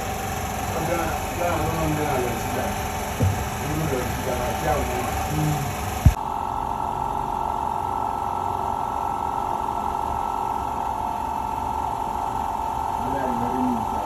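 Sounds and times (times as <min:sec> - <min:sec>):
machine hum: 0:00.0 - 0:06.2.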